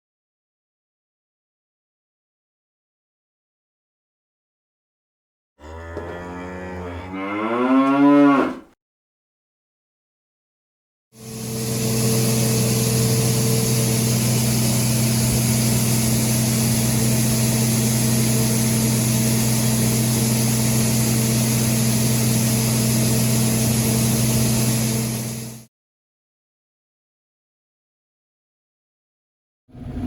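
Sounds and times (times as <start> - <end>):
hiss: 11.2 - 25.6
farm machine engine drone: 11.2 - 25.7.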